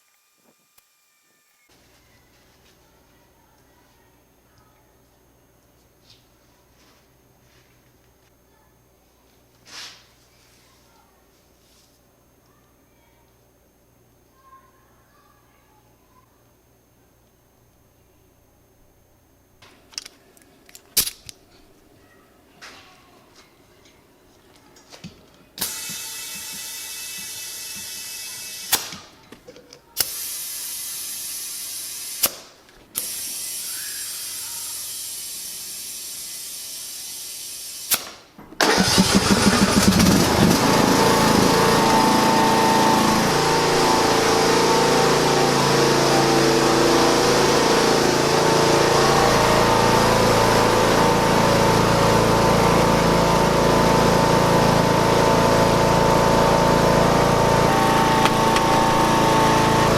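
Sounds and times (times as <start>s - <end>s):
faint steady hum: 0.0s - 25.6s
lawn mower engine starting and running: 38.6s - 59.9s.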